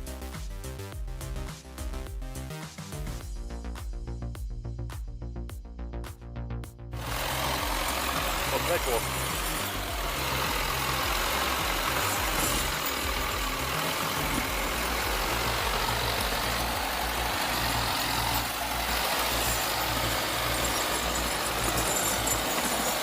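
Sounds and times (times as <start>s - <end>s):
heavy machine engine droning: 7.0s - 23.0s.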